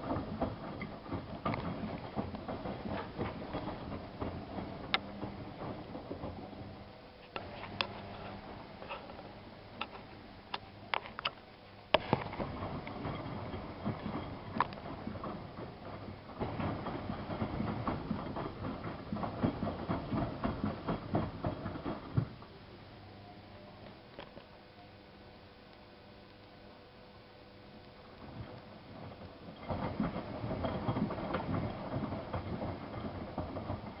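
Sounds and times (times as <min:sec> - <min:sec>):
laundry tumbling and knocking: 0:00.0 - 0:09.0, 0:12.0 - 0:22.5, 0:28.2 - 0:34.0
washing machine motor hum: 0:00.0 - 0:34.0.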